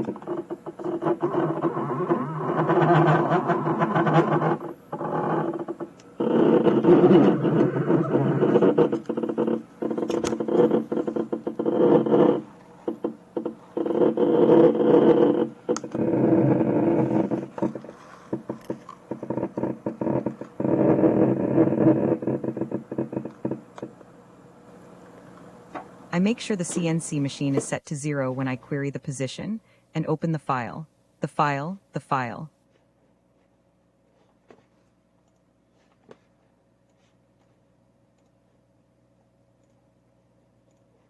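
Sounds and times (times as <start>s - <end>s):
stepper motors whining: 0.0s - 17.9s.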